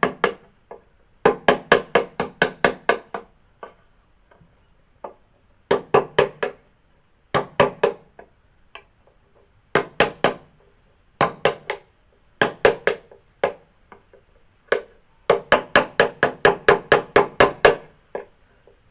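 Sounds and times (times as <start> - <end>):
knocking strikes on wood: 0.0 - 3.8, 5.0 - 6.6, 7.3 - 8.3, 9.7 - 10.5, 11.2 - 14.0, 14.7 - 18.3.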